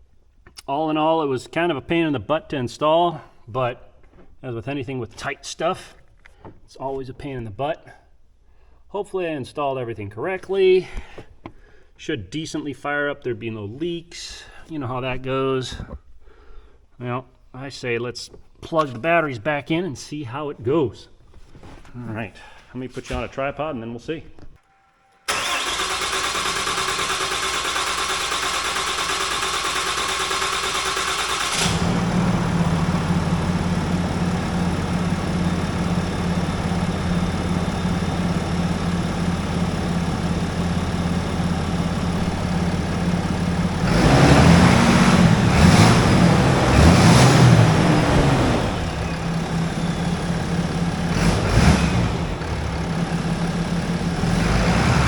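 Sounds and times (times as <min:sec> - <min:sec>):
diesel engine cranking on starter: 0:25.2 - 0:55.0
diesel engine idling: 0:25.3 - 0:55.0.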